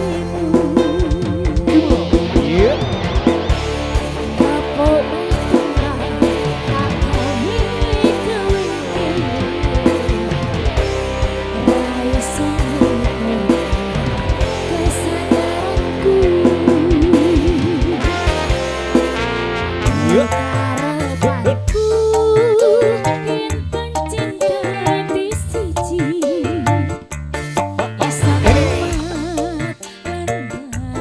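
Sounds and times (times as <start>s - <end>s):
hand drums beat: 0.0s - 19.3s, 28.0s - 29.6s
electric guitar: 0.0s - 31.0s
keyboard: 0.0s - 31.0s.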